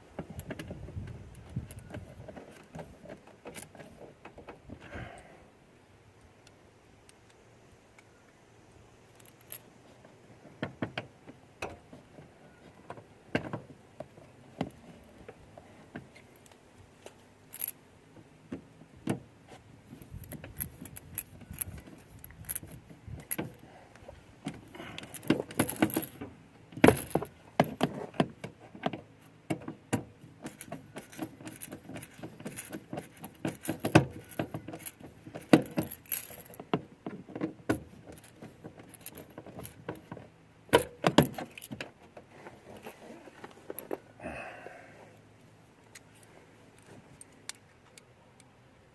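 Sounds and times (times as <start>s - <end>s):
metal parts and tools jingling: 17.5s - 17.8s, 20.0s - 23.6s, 30.4s - 36.6s, 38.1s - 39.9s.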